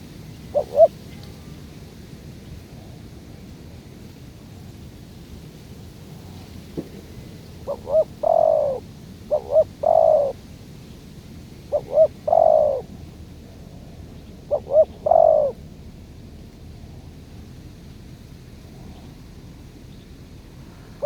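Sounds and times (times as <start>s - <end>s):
dove cooing: 0.0s - 1.0s, 7.6s - 10.4s, 11.7s - 12.9s, 14.4s - 15.6s.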